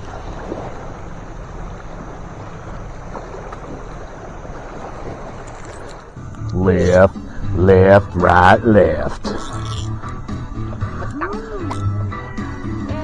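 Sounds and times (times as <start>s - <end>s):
river water flowing: 0.0s - 13.0s.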